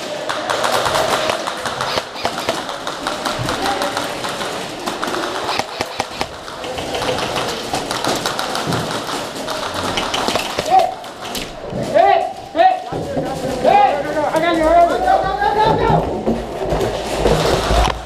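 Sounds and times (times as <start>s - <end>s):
airsoft guns firing: 0.0s - 11.6s.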